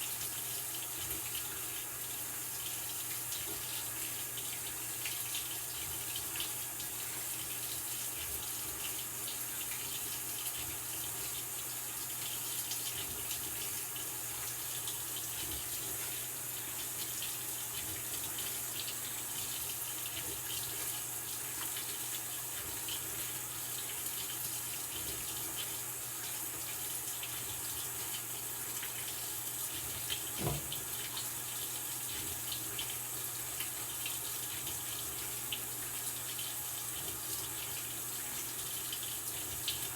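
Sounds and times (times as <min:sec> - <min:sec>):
water running into washing machine: 0:00.0 - 0:39.9
thump: 0:30.4 - 0:30.9.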